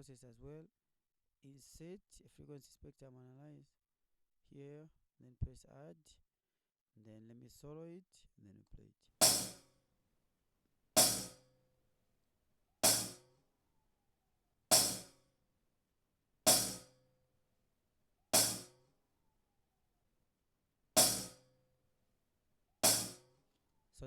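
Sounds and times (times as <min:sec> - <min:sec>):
hi-hat hits: 0:09.2 - 0:09.7, 0:11.0 - 0:11.5, 0:12.8 - 0:13.3, 0:14.7 - 0:15.2, 0:16.5 - 0:17.1, 0:18.4 - 0:18.8, 0:21.0 - 0:21.6, 0:22.8 - 0:23.4.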